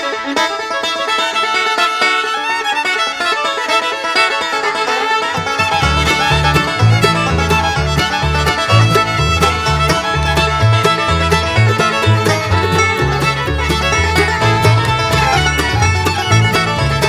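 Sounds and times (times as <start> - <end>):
fiddle: 0.0 - 17.0
plucked strings: 0.0 - 17.0
bass line: 5.4 - 17.0.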